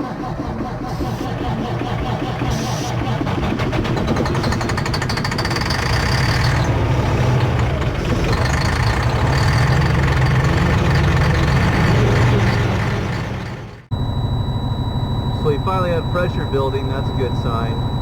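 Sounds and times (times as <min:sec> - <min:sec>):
diesel engine running: 0:00.0 - 0:18.0
faint high whine: 0:13.9 - 0:18.0.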